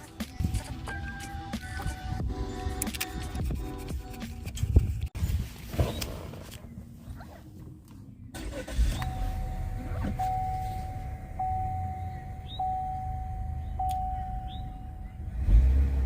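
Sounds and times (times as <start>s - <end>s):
car engine starting and idling: 7.5s - 16.0s.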